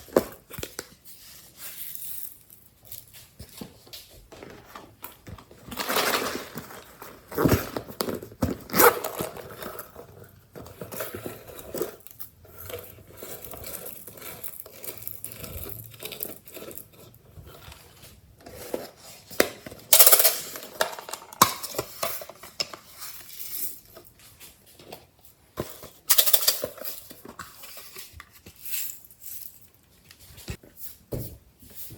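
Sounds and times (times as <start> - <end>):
utensil scraping a container: 10.8 - 19.2.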